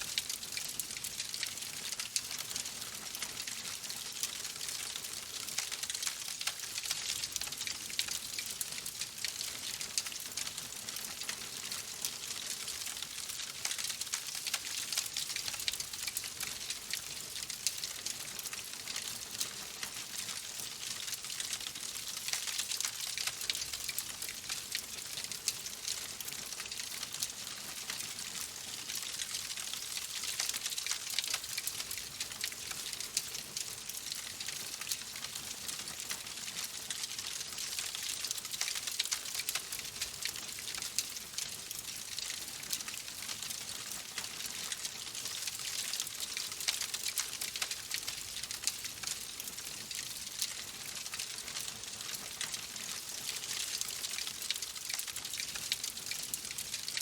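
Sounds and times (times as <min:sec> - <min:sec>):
wood fire crackling: 0:00.2 - 0:49.6, 0:50.2 - 0:57.0.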